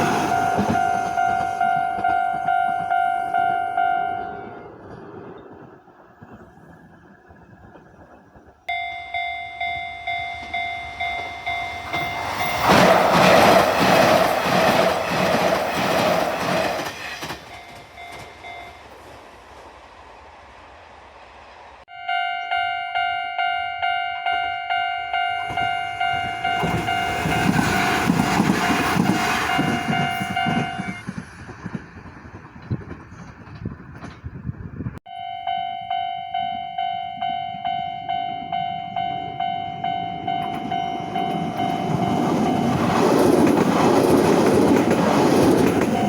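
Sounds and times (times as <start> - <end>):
level crossing alarm clanging: 0.0 - 4.8, 8.7 - 18.9, 21.9 - 31.0, 35.1 - 46.0
electric train passing: 0.0 - 46.0.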